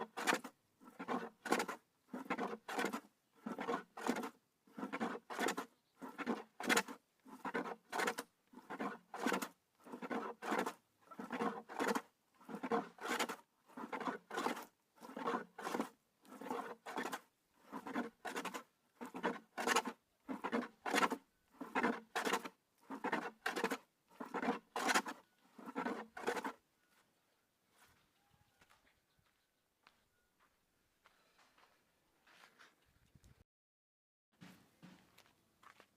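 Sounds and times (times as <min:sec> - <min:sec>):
hand tool scraping wood: 0:00.0 - 0:26.6.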